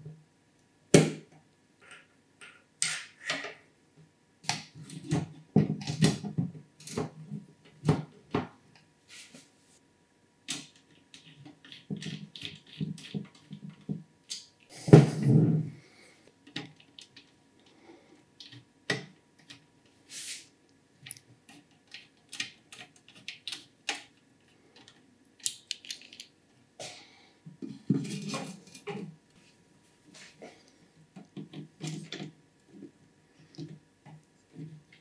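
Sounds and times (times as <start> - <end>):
hands handling computer parts: 21.0 - 26.4.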